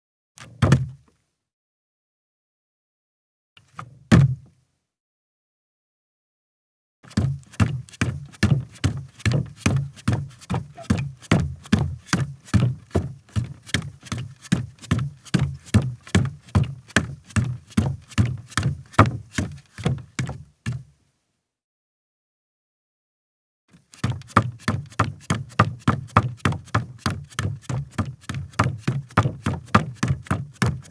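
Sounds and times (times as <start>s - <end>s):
bare feet walking on a deck: 7.2s - 20.8s, 24.0s - 30.9s.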